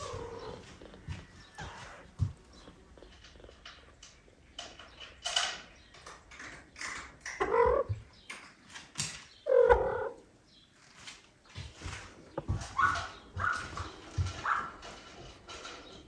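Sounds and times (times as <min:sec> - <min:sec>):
cat meowing: 0:00.0 - 0:02.1
clicking and rustling: 0:00.0 - 0:09.4, 0:10.8 - 0:16.0.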